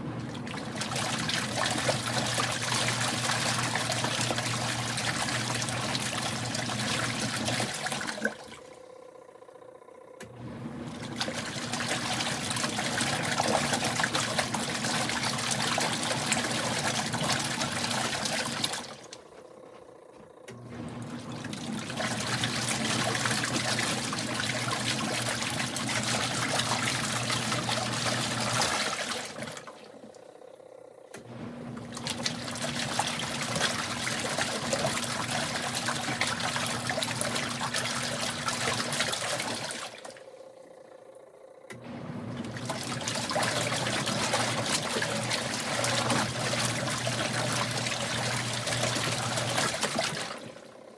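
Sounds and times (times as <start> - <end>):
water sloshing: 0.0 - 8.8, 10.4 - 30.2, 31.3 - 40.4, 41.8 - 50.9
washing machine motor humming: 0.0 - 50.9.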